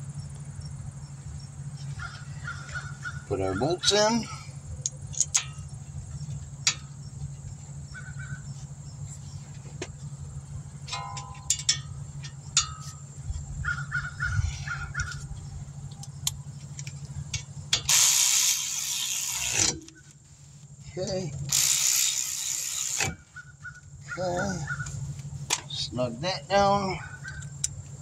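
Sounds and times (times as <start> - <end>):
steady low hum: 0.0 - 28.0
crows cawing: 1.8 - 4.3, 7.9 - 8.5, 13.6 - 15.2, 26.9 - 27.5
metal clinks of hand tools: 10.9 - 13.0.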